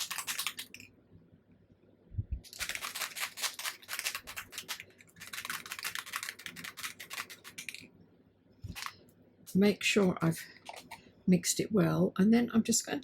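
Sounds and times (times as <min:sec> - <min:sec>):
spray bottle rattling when shaken: 0:02.4 - 0:07.9, 0:08.6 - 0:09.0.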